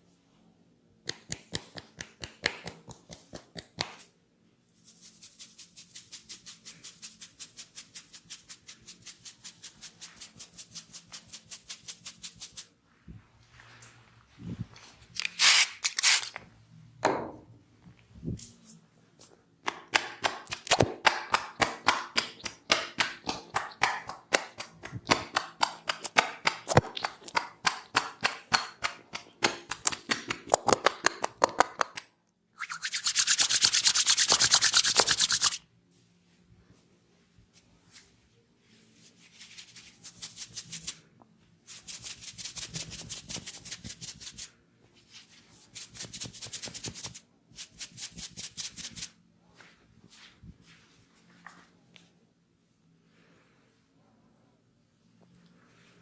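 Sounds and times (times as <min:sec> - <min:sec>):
hands tapping rapidly: 0:19.7 - 0:32.0, 0:33.0 - 0:35.6
hands rubbing fast: 0:32.6 - 0:35.6, 0:39.3 - 0:41.0, 0:45.8 - 0:49.1.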